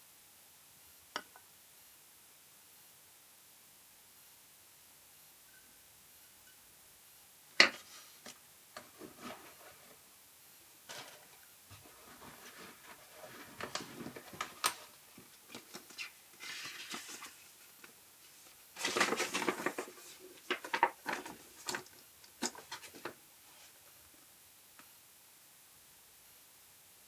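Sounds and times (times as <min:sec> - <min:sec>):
packaging rustling: 0:10.9 - 0:18.0, 0:18.8 - 0:23.2.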